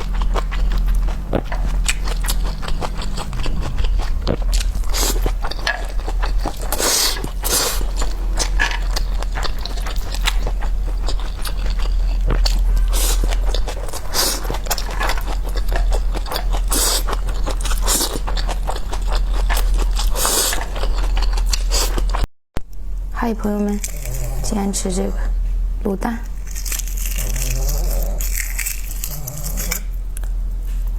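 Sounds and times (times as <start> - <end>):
crunchy chewing: 0.0 - 22.2, 23.7 - 24.5, 26.3 - 30.9
low electrical hum: 0.0 - 30.9.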